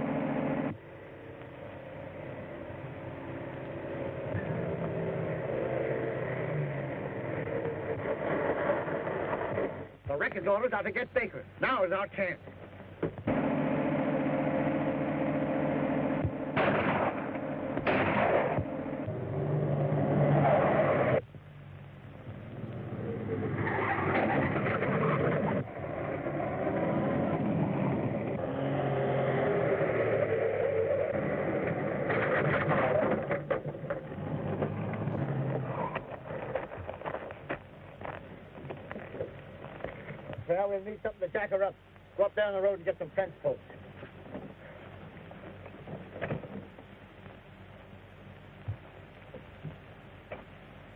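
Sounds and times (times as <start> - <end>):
car engines running hard: 0.0 - 10.1, 12.4 - 40.4.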